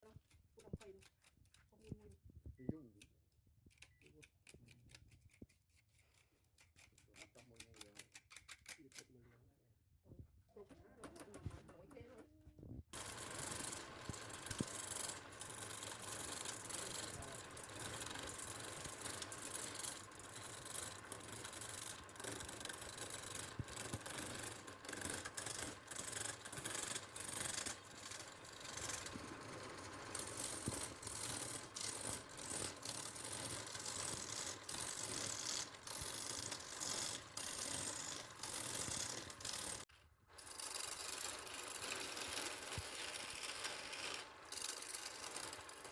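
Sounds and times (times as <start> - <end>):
lathe gouge scraping wood: 13.0 - 45.9.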